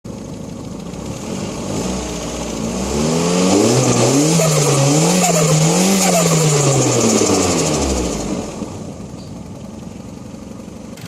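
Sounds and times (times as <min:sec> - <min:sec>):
car engine revving: 0:00.8 - 0:09.0.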